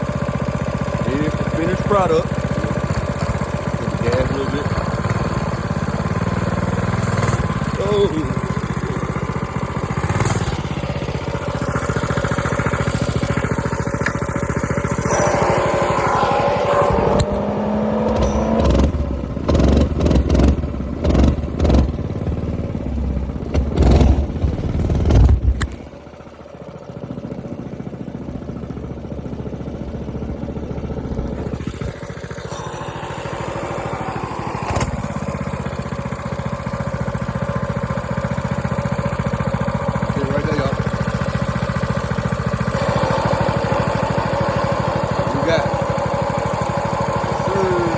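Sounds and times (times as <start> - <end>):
minibike engine revving: 0.0 - 47.9
chain noise: 18.0 - 19.0.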